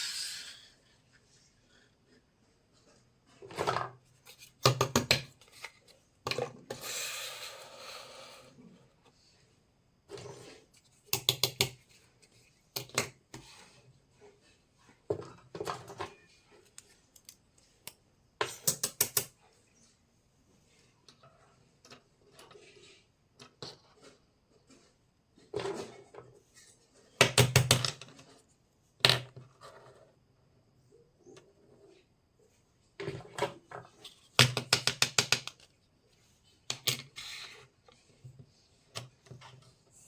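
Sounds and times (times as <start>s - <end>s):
toy kitchenware clicking and clattering: 3.3s - 7.7s, 11.0s - 11.9s, 18.4s - 19.4s, 33.0s - 35.8s, 36.7s - 37.5s.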